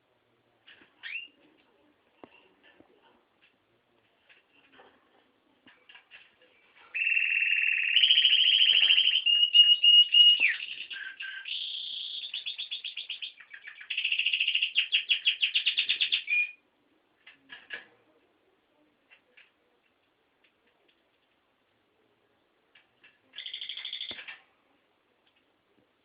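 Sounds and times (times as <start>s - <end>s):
canary singing trills: 1.0s - 1.4s, 6.9s - 16.6s, 23.4s - 24.3s
soft bird chirps: 6.5s - 16.6s, 23.2s - 24.4s.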